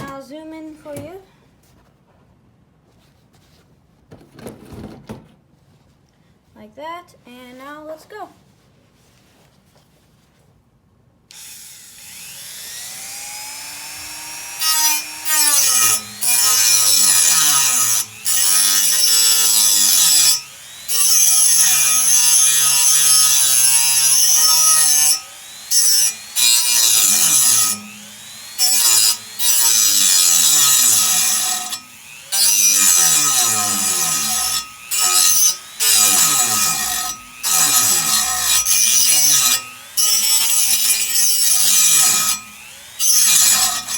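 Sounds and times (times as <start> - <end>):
rotary tool grinding metal: 11.3 - 43.9.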